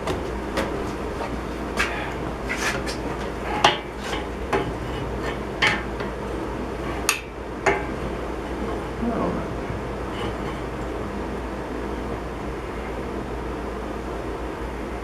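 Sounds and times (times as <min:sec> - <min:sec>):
low rumble: 0:08.1 - 0:12.2.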